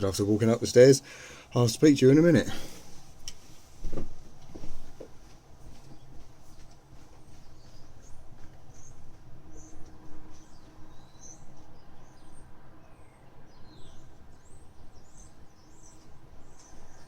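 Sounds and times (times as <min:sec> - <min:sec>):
small birds chirping: 0:05.8 - 0:17.0.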